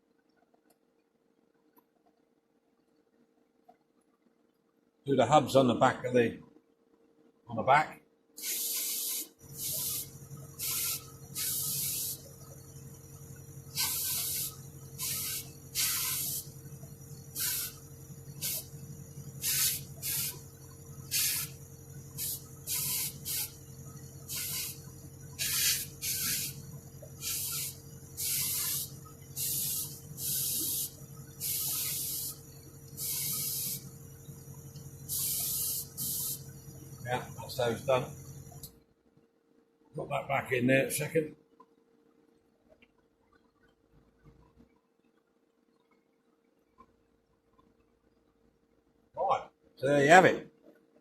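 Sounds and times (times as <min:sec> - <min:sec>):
spray paint hissing: 0:08.4 - 0:12.7, 0:13.6 - 0:38.7
low motor hum: 0:09.4 - 0:38.8.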